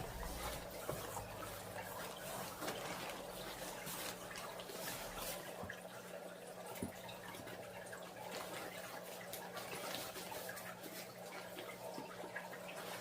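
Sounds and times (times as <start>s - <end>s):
packing material rustling: 2.0s - 5.4s.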